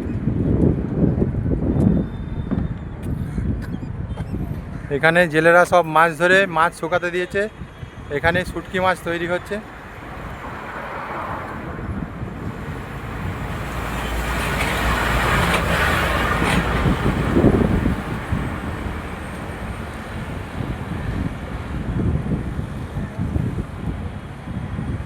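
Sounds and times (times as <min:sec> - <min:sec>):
steady low traffic rumble: 0:00.0 - 0:25.0
vehicle passing: 0:08.6 - 0:24.4.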